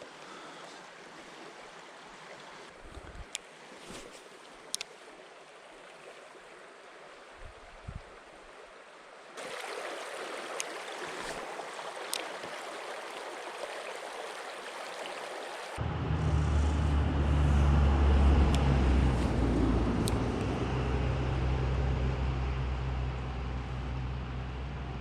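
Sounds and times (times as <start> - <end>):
creek water running over rocks: 0.0 - 15.8, 18.4 - 20.6.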